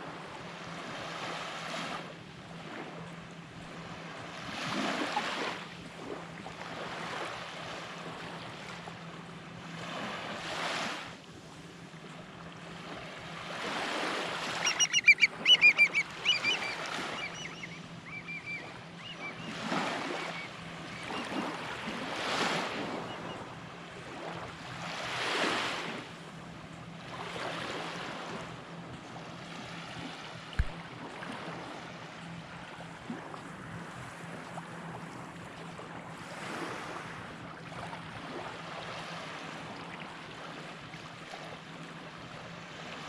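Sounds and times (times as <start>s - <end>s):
waves washing on beach: 9.7s - 11.2s, 24.0s - 26.2s
bird honking cries: 14.6s - 19.6s.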